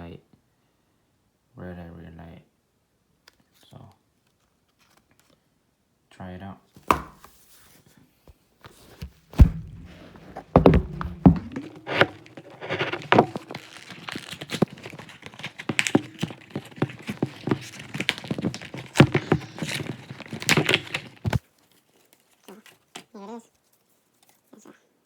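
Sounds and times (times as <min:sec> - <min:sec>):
objects knocking on hard surface: 0:09.0 - 0:21.4.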